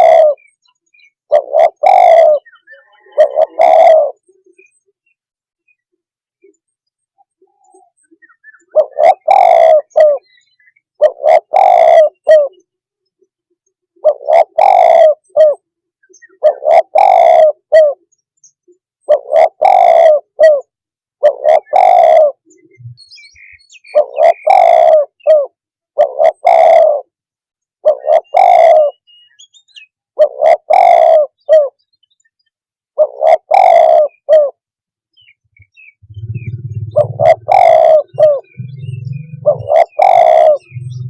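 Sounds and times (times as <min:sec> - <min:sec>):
dove cooing: 0:00.0 - 0:00.5, 0:01.3 - 0:04.7, 0:07.3 - 0:12.6, 0:14.0 - 0:15.6, 0:16.2 - 0:18.1, 0:19.0 - 0:23.0, 0:23.8 - 0:27.2, 0:27.8 - 0:29.1, 0:30.2 - 0:31.8, 0:33.0 - 0:34.6, 0:35.2 - 0:41.0.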